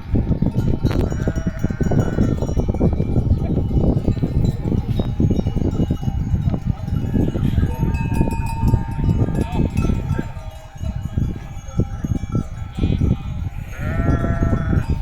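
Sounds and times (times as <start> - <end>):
flock of sheep: 0.0 - 15.0
sheep bleating: 0.9 - 2.4, 12.6 - 15.0.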